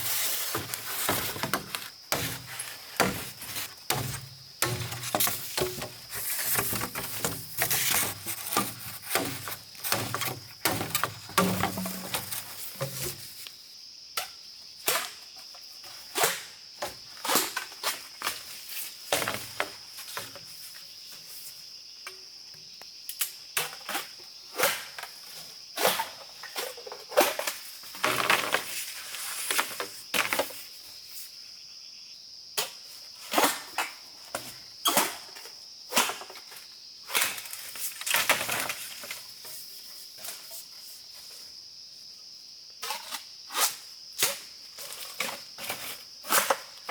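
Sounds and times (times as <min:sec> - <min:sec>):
insects droning: 0:00.0 - 0:46.9
sharp knocks and cracks: 0:00.5 - 0:13.2.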